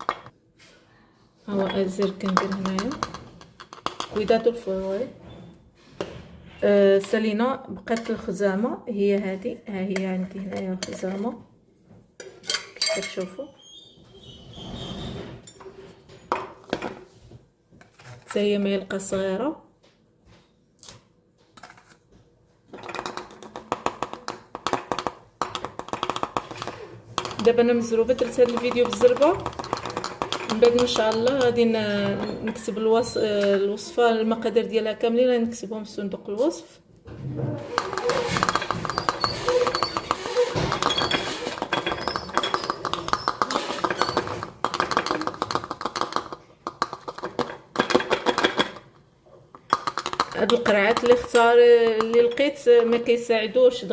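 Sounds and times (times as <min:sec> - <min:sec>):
glass bottles clinking: 0:24.2 - 0:33.4, 0:37.7 - 0:46.1.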